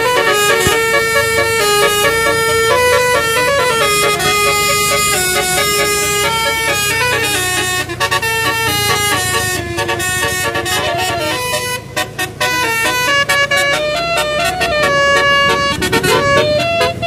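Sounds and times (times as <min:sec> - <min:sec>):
multi-tone bus horn melody: 0:00.0 - 0:17.0.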